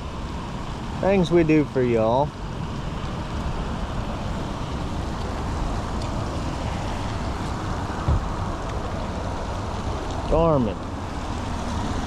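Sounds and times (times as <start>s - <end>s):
rain: 0.0s - 12.0s
dull thump: 8.0s - 8.4s.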